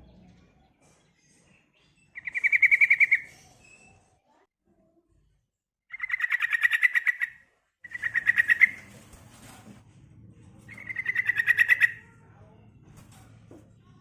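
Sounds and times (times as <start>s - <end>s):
bird chattering trills: 2.2s - 3.3s, 5.9s - 8.9s, 10.7s - 12.0s.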